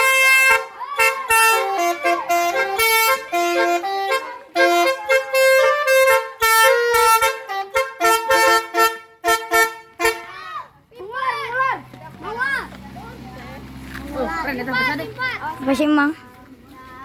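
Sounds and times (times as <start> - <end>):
musical horn playing a tune: 0.0 - 10.4.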